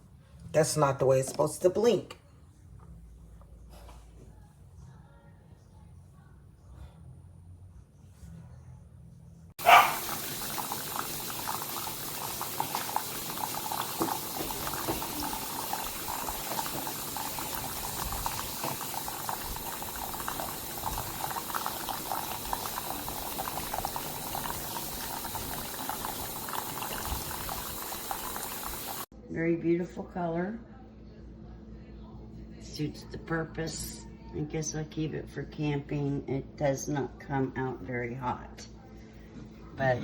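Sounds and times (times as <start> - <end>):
coffee maker bubbling and spitting: 9.8 - 29.1.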